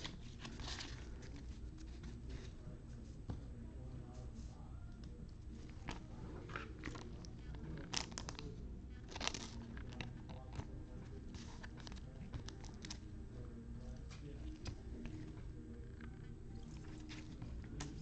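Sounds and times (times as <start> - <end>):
cards being handled: 0.0 - 2.6, 5.0 - 13.1, 13.8 - 18.0
low background hum: 0.0 - 18.0
foil wrapper crinkling: 6.5 - 8.5, 9.1 - 10.5.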